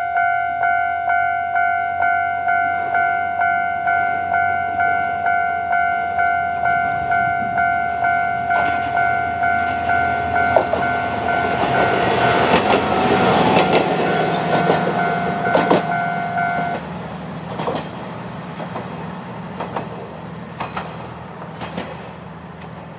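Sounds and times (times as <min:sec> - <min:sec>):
level crossing alarm ringing: 0:00.0 - 0:16.9
train wheels clicking on rail joints: 0:05.4 - 0:22.9.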